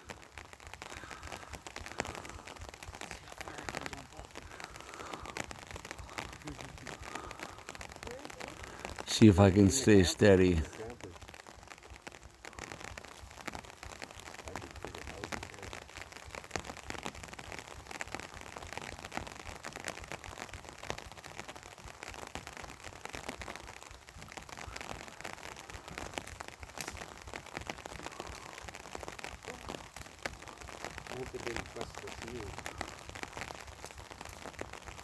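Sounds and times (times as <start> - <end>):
fireworks crackling and popping: 0.0 - 35.0.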